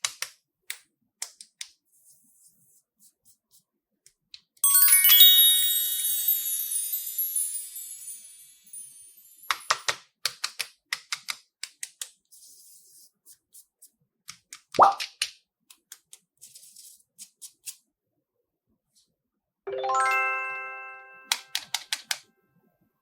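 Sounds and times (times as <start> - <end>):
chime-like tinkle: 4.6 - 9.9, 19.7 - 21.6
sharp clicks and taps: 21.2 - 22.2.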